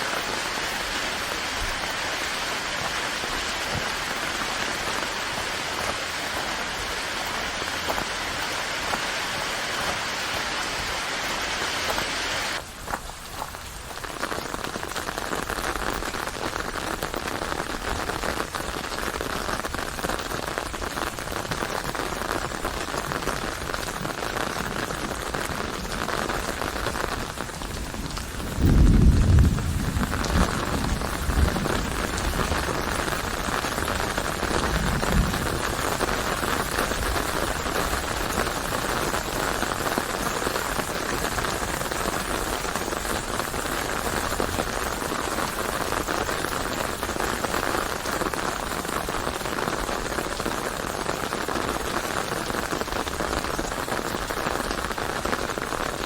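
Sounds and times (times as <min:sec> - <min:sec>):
steady rain falling: 0:00.0 - 0:56.0
thunder rumbling: 0:25.0 - 0:42.7.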